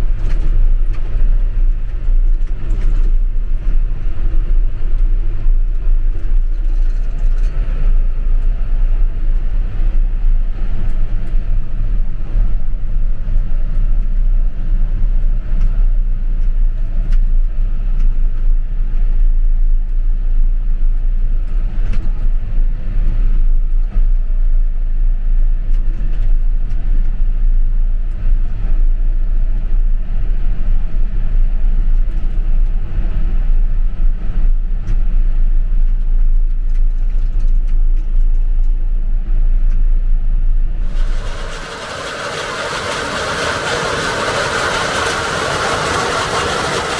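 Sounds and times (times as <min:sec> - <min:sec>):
vehicle engine rumbling: 0:40.8 - 0:46.9.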